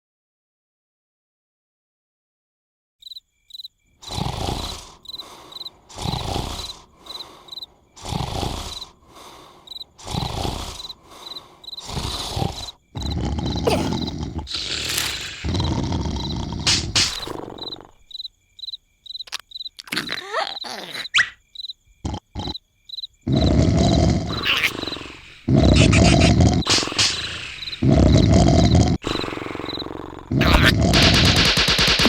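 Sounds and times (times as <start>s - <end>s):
crickets chirping: 3.0s - 31.7s
cartoon snoring: 4.0s - 18.1s, 19.3s - 21.4s, 22.0s - 22.6s, 23.2s - 32.0s.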